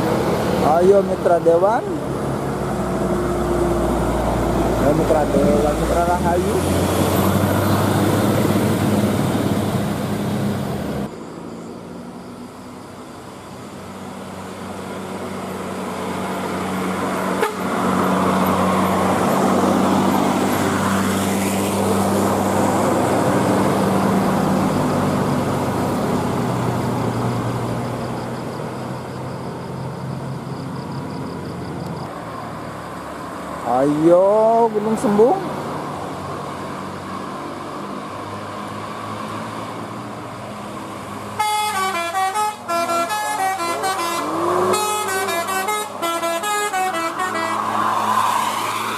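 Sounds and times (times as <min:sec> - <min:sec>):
bus engines droning: 0:00.0 - 0:48.9
horn toots: 0:17.4 - 0:17.7, 0:41.4 - 0:47.6.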